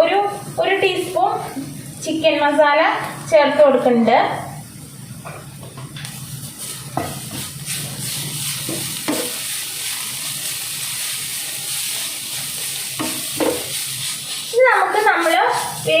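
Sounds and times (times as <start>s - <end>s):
vegetables sizzling in oil: 0.0s - 16.0s
spatula scraping a pan: 6.0s - 16.0s.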